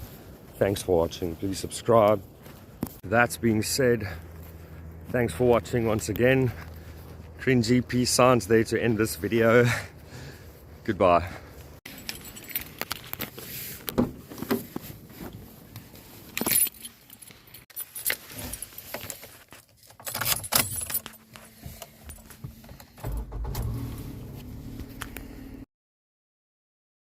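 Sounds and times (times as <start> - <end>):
keys jangling: 11.9 - 13.4, 16.3 - 23.2
low steady hum: 20.6 - 25.6.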